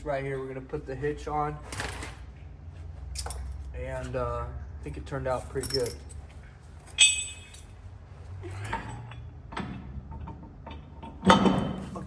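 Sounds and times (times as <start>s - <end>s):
heavy steel parts clanking: 5.4s - 6.2s, 6.8s - 7.8s
ringing metal clink: 5.6s - 6.1s, 7.0s - 7.8s.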